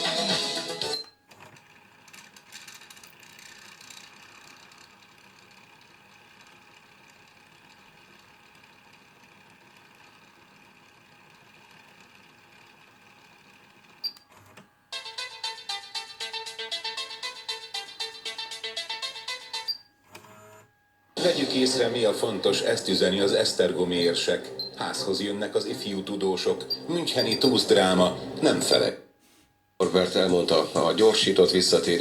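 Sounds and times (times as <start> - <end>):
music from car stereo: 0.0 - 1.1, 15.0 - 19.8, 21.2 - 22.9, 26.4 - 28.7
jingle of electronic beeps: 26.6 - 27.7.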